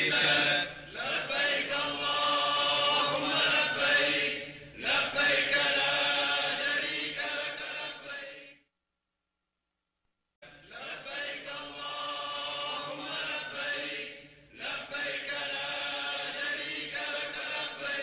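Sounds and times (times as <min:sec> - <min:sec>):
vocal chanting: 0:00.0 - 0:08.6, 0:10.4 - 0:18.0.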